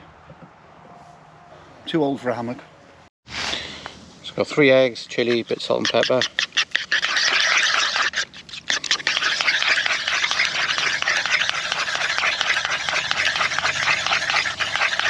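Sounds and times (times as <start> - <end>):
eggs being whisked in bowl: 5.2 - 15.0.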